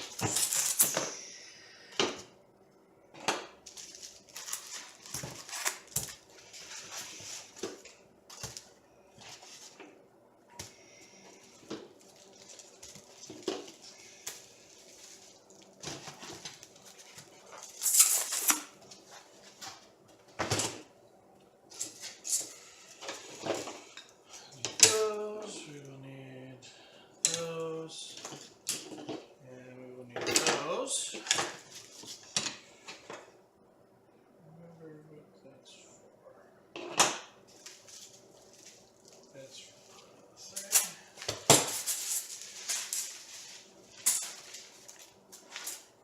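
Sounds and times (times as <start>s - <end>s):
packaging rustling: 3.6s - 7.6s, 11.3s - 19.6s, 37.6s - 46.0s.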